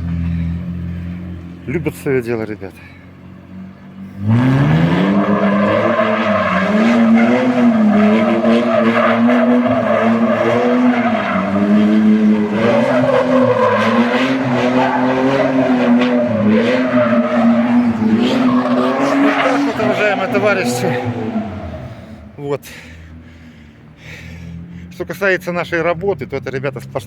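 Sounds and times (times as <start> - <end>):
car engine revving: 0.0 - 27.0
tyres squealing: 4.8 - 22.4.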